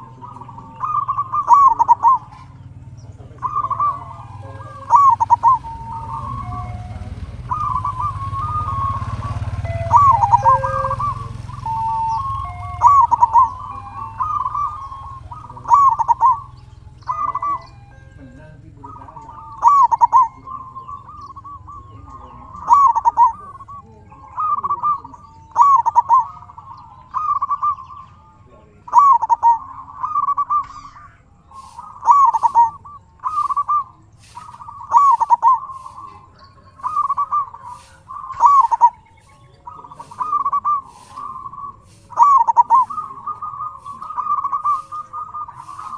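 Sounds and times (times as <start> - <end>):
dove cooing: 0.0 - 45.9.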